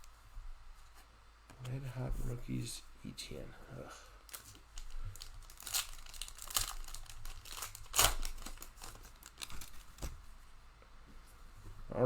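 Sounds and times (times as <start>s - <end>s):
plastic wrapper crinkling: 4.3s - 10.2s.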